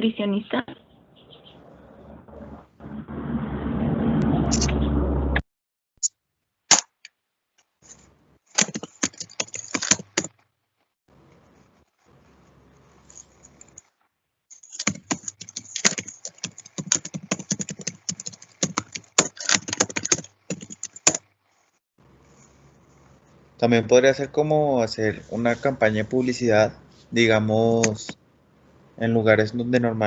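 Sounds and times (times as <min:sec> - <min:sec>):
typing on computer keyboard: 0:08.6 - 0:10.3, 0:14.6 - 0:21.2.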